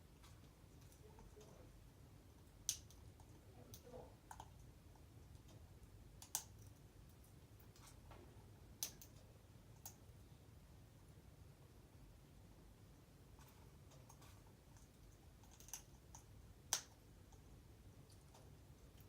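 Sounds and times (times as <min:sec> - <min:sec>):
parrot clicking: 0:06.2 - 0:06.7, 0:14.8 - 0:17.4.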